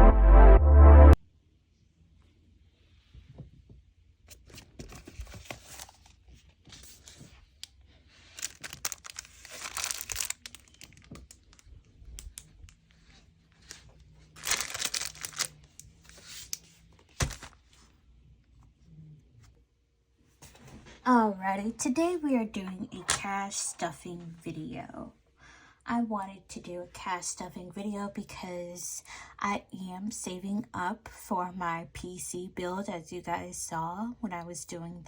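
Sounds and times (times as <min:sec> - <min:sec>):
paper rustling and crinkling: 0:04.3 - 0:18.0
paper tearing: 0:08.4 - 0:10.5, 0:14.4 - 0:15.5.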